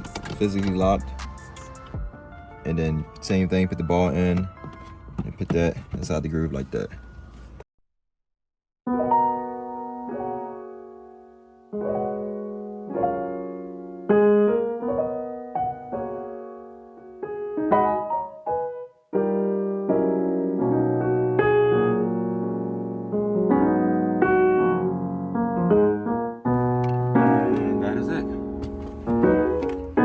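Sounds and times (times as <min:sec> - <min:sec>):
slow piano chords: 0:08.9 - 0:30.0.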